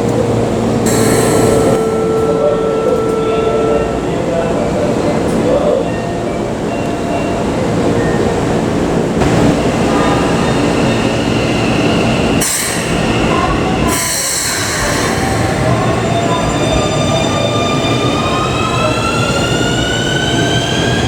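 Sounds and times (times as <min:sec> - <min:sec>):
train wheels rumbling on rail: 0:00.0 - 0:21.0
high wheel squeal: 0:00.9 - 0:04.4.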